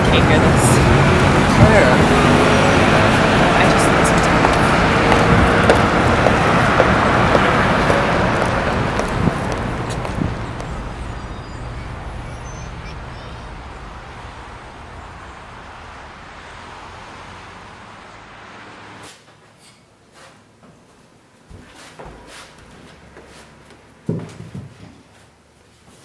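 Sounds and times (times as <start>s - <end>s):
vehicle engine hum: 0.0s - 19.0s.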